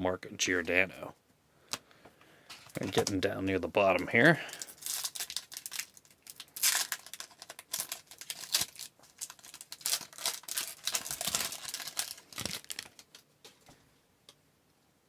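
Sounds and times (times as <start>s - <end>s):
wrapper tearing and crinkling: 4.4s - 13.2s.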